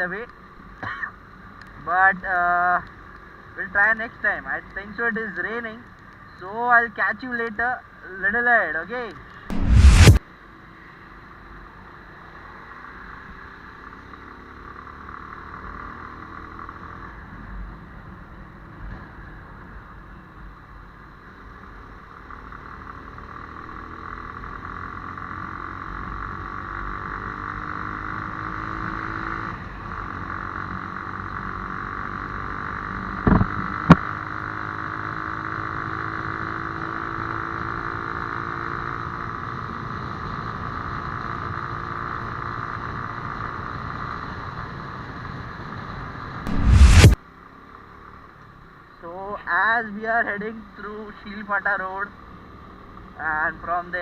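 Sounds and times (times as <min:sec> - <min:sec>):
motorcycle engine running: 0:09.5 - 0:10.2, 0:29.7 - 0:36.0
sharp knocks: 0:33.3 - 0:34.0.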